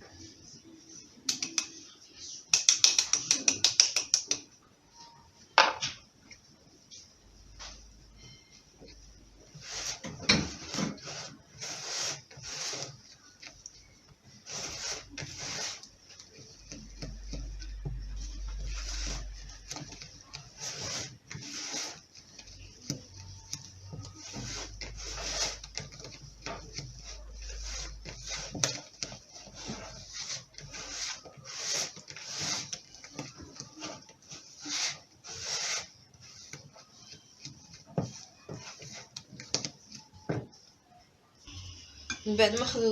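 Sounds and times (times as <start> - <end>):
utensil stirring batter in bowl: 1.3 - 4.6, 7.7 - 40.7.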